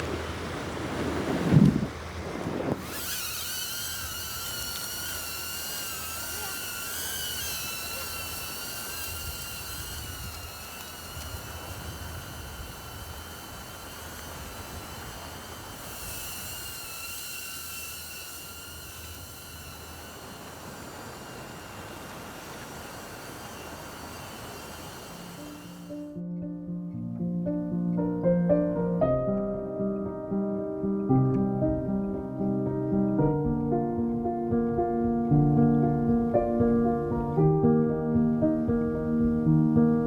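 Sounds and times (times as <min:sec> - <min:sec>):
drone propellers whining: 0:00.0 - 0:26.2.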